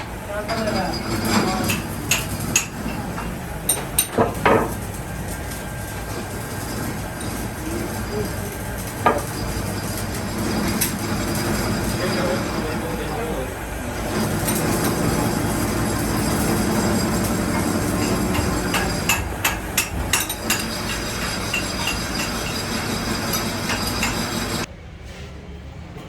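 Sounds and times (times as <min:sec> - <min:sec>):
hammer striking metal: 0:18.0 - 0:22.6.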